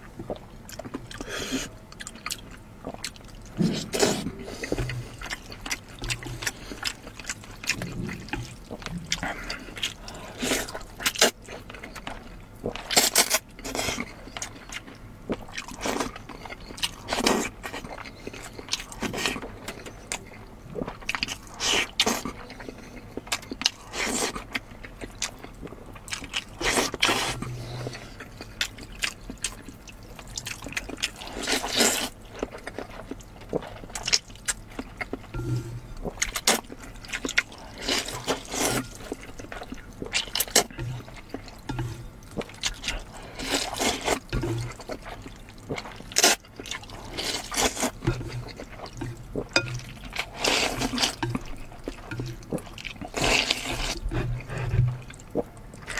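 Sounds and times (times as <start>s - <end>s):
wet chewing and mouth smacking: 0.1s - 55.9s
noisy slurping or crunching: 12.6s - 14.4s, 26.1s - 29.7s, 30.4s - 55.9s.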